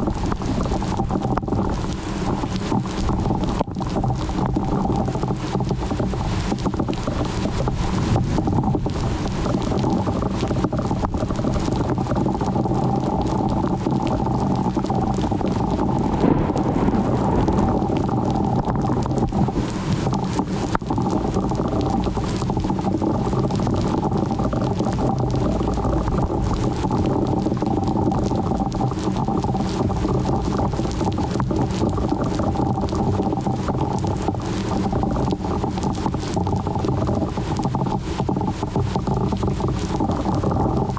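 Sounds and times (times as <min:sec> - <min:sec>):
rain: 0:00.0 - 0:40.9
wind buffeting microphone: 0:15.3 - 0:21.3.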